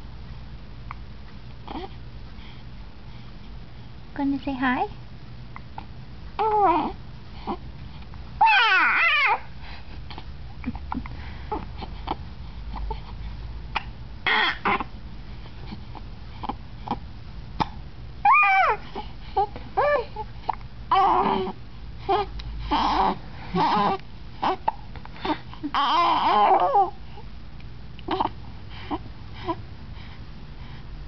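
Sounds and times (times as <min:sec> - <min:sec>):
baby squealing cries: 0:08.4 - 0:09.4, 0:14.3 - 0:14.8, 0:18.3 - 0:18.8, 0:25.8 - 0:26.9.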